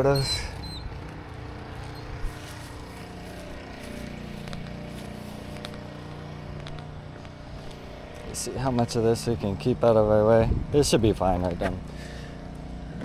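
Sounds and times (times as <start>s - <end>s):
gas engine running: 0.0s - 13.0s.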